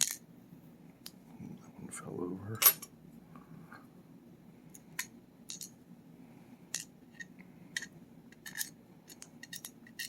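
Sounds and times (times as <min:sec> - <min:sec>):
small metal parts clicking: 0:06.7 - 0:10.0.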